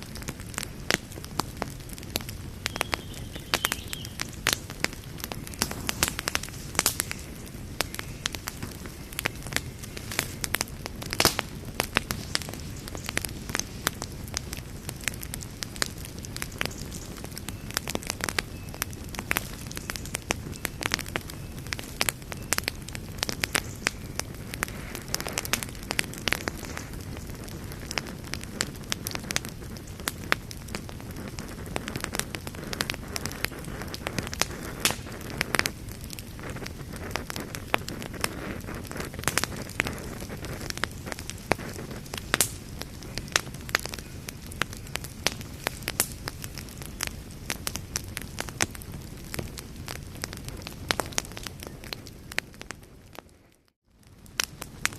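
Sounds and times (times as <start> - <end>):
low rumble of flame: 0.0 - 54.9
wood fire crackling: 0.0 - 54.9.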